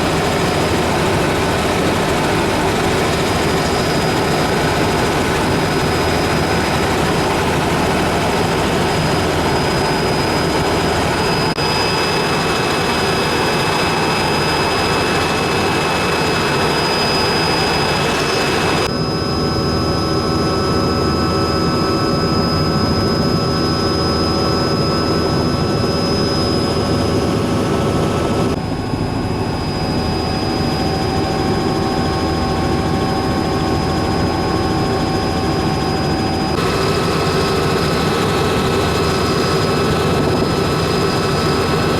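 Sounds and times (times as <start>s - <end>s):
helicopter engine and rotor drone: 0.0s - 41.9s
high steady whine: 0.0s - 41.9s.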